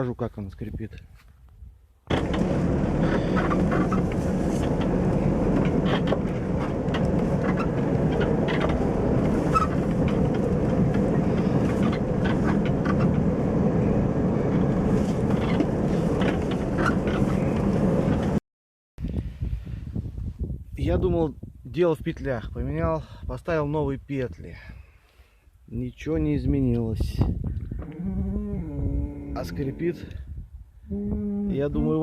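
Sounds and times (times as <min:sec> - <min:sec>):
tailgate squeaking and creaking: 0:02.1 - 0:13.4, 0:14.6 - 0:18.3
car road and running noise: 0:02.1 - 0:18.4.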